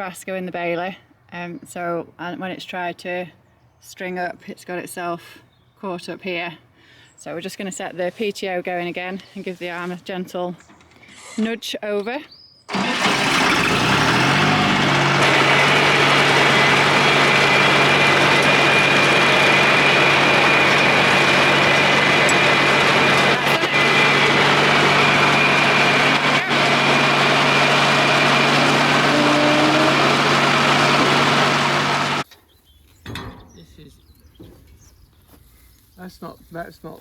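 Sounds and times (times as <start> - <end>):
tractor engine running: 12.7 - 32.2.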